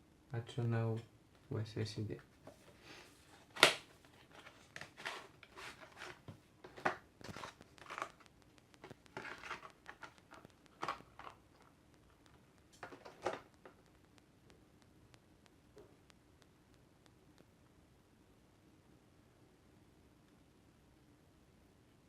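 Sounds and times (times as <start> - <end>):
handling scrapes clicks and rustles: 2.4 - 11.7, 12.3 - 13.8.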